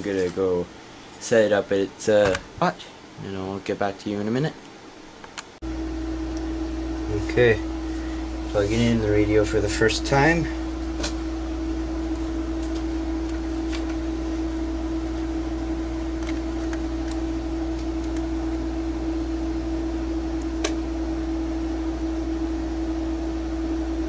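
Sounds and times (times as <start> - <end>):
electrical hum: 0.0 - 24.0.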